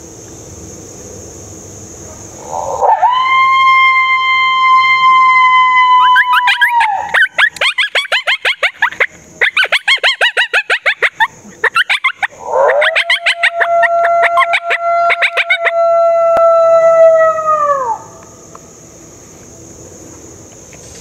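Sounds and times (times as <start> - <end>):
coyote howls: 2.4 - 18.2
coyote yips: 6.1 - 15.8.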